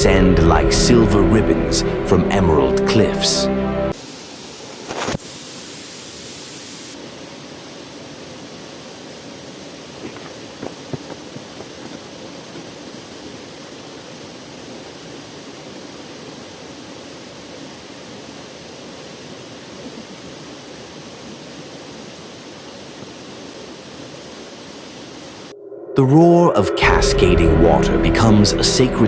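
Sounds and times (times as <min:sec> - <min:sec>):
waterfall rushing: 0:06.9 - 0:25.5.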